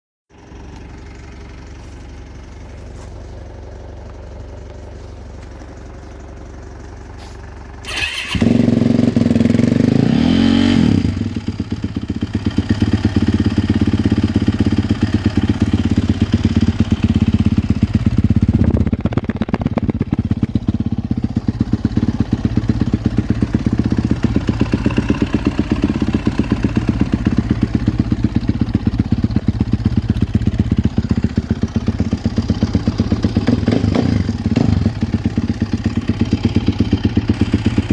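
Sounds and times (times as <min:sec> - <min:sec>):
motorcycle engine starting and idling: 0:00.3 - 0:37.9
engine throttle blip: 0:07.1 - 0:09.5.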